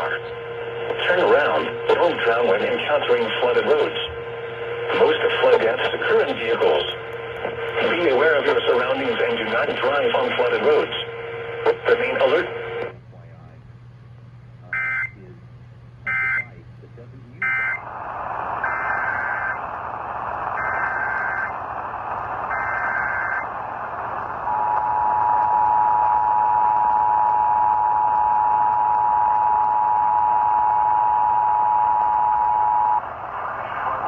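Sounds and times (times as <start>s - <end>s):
radio hiss: 0.0s - 13.5s, 16.4s - 27.3s, 32.5s - 34.0s
screechy data bursts: 18.6s - 19.6s, 20.5s - 21.6s, 22.4s - 23.5s.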